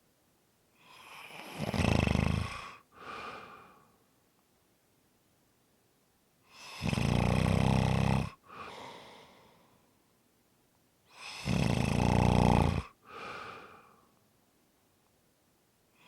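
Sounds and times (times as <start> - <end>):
person snoring: 0.8 - 3.5, 6.5 - 9.0, 11.2 - 13.7
soft breath: 2.8 - 4.1, 8.4 - 10.0, 13.0 - 14.2.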